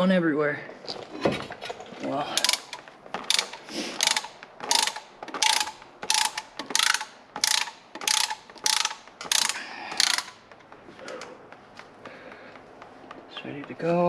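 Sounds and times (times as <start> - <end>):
ratchet wrench clicking: 2.4 - 10.4.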